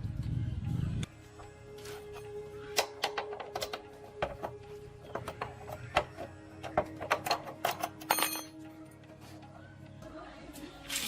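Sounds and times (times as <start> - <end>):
faint background music: 0.0 - 11.0
hand tools clicking on metal parts: 2.8 - 8.6.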